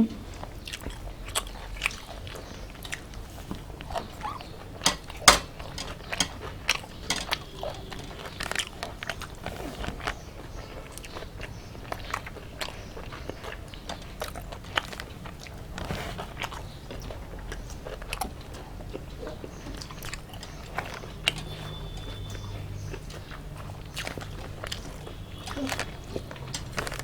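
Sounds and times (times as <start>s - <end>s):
people chewing food: 0.0s - 27.0s.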